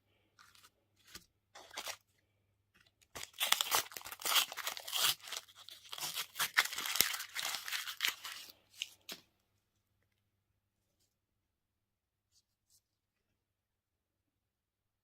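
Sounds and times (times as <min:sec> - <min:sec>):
candy wrapper crinkling: 0:00.4 - 0:02.0, 0:02.9 - 0:09.2.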